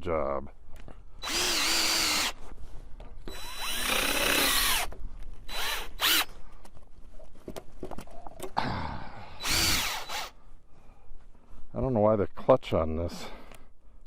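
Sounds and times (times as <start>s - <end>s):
power drill driving screws: 1.2s - 2.4s, 3.2s - 6.3s, 9.4s - 10.3s.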